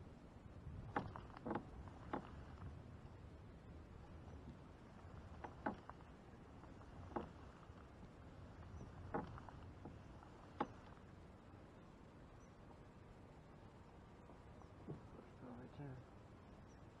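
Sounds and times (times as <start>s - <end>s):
knocks on kayak hull: 0.8s - 2.5s, 9.0s - 10.8s
faint ticks: 4.1s - 11.2s.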